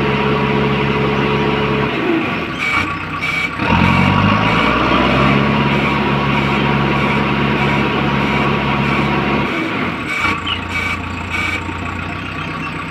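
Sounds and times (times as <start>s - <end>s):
diesel engine running: 0.0s - 12.9s
short high beeps: 10.1s - 11.8s.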